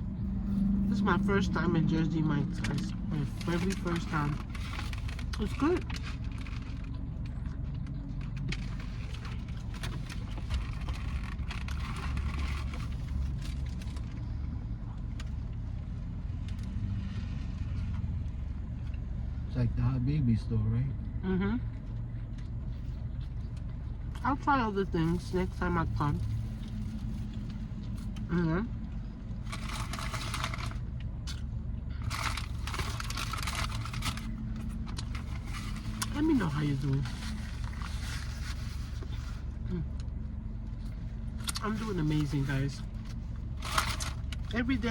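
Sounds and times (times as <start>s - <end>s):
car engine rumble: 0.0s - 44.9s
eating crunching and rustling: 2.6s - 14.3s, 25.1s - 28.3s, 29.3s - 44.9s.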